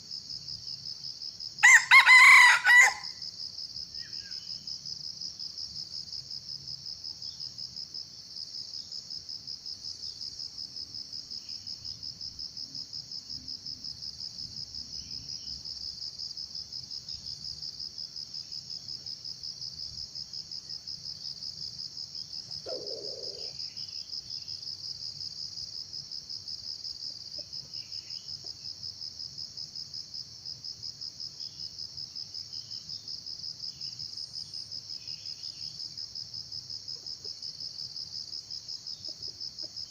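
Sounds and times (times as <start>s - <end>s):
insect trilling: 1.6s - 3.2s, 22.6s - 23.7s.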